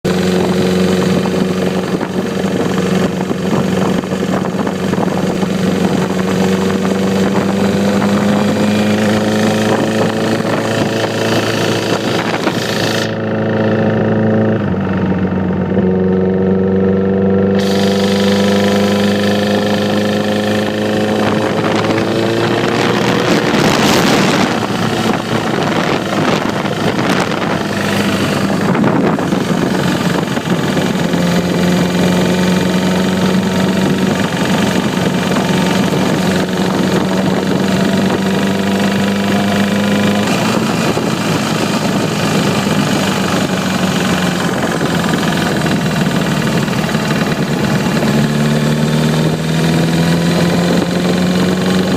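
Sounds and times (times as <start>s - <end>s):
engine ticking: 17.6s - 51.9s
motorcycle engine idling: 40.5s - 48.5s.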